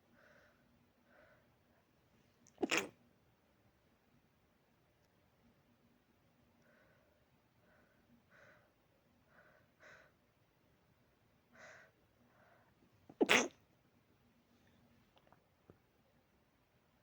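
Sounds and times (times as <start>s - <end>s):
person sneezing: 2.6s - 2.9s.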